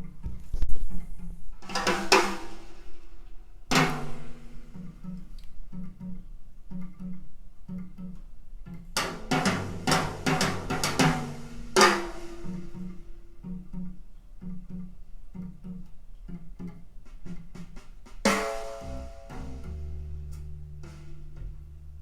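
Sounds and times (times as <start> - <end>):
drum kit: 0.0 - 5.4, 8.9 - 13.5, 16.6 - 22.0
snare hits and cymbal crashes: 9.2 - 12.9
bass line: 18.5 - 22.0.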